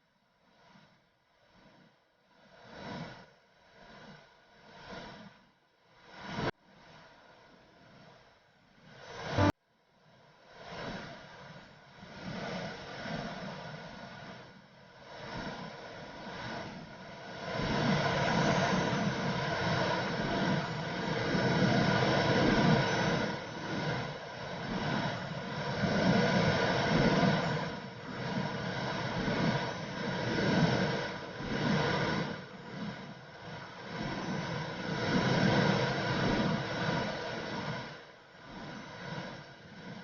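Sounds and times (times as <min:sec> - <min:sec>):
low muffled pulsing surge: 0:09.3 - 0:09.6.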